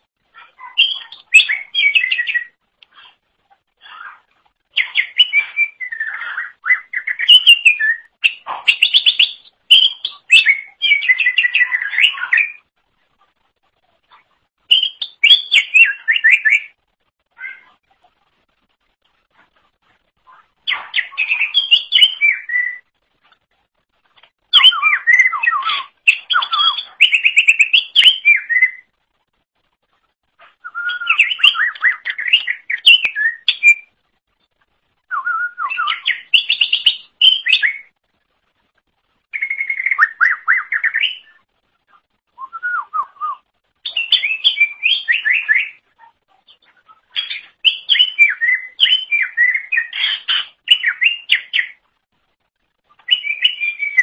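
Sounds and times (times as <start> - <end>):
bird warbling and chattering: 0.3 - 12.7, 20.2 - 22.8, 24.5 - 28.9, 30.3 - 33.9, 43.8 - 51.8.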